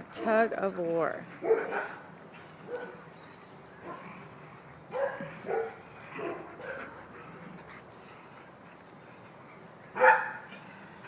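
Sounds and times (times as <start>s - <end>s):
dogs barking: 1.4s - 3.2s, 3.8s - 7.2s, 9.9s - 10.9s.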